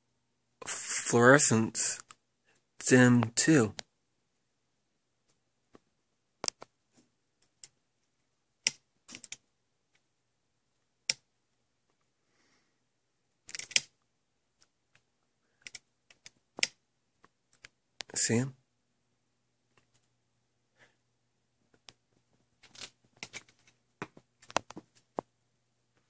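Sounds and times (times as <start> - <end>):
sharp clicks and light taps: 22.7 - 25.3.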